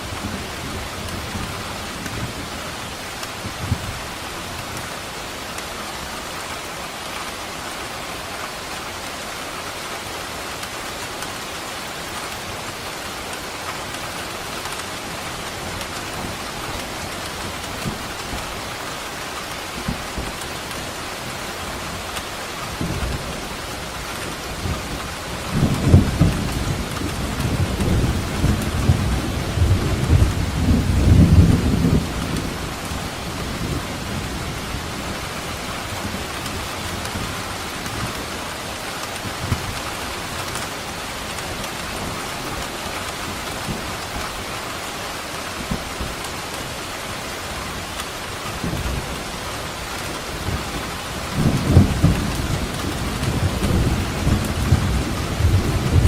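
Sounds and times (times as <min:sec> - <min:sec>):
steady rain: 0:00.0 - 0:56.0
thunder rumbling: 0:24.6 - 0:38.3, 0:47.9 - 0:56.0.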